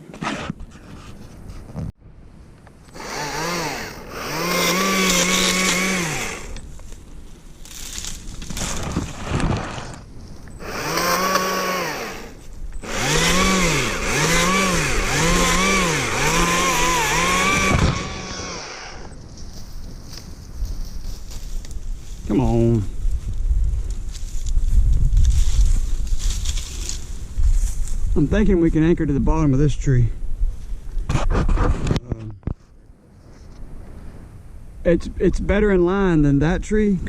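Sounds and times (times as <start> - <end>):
cordless chainsaw motor bursts: 2.9 - 6.6, 10.6 - 19.1.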